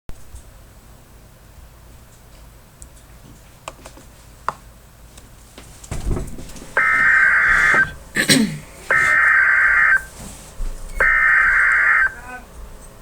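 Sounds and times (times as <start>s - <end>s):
low thump: 5.9s - 6.8s
electronic data tones: 6.8s - 8.0s, 8.7s - 10.1s, 10.9s - 12.4s.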